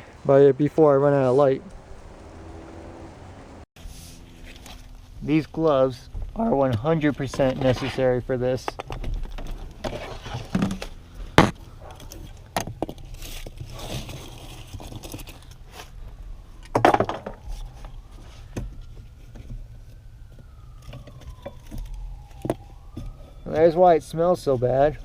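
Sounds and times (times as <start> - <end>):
car interior parts clunking: 0.0 - 3.6
faint siren wailing: 0.0 - 3.7, 9.3 - 12.6, 13.2 - 25.0.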